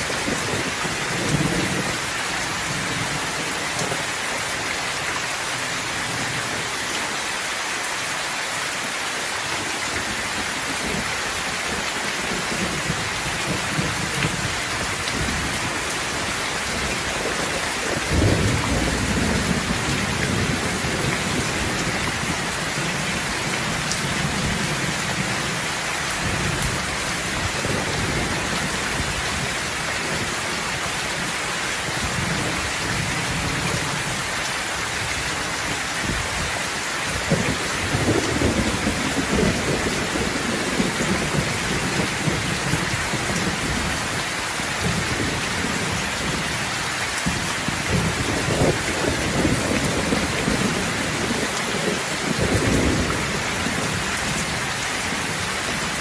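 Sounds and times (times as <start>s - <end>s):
rolling thunder: 0.0s - 2.0s, 11.7s - 25.6s, 47.2s - 54.6s
steady rain: 0.0s - 56.0s.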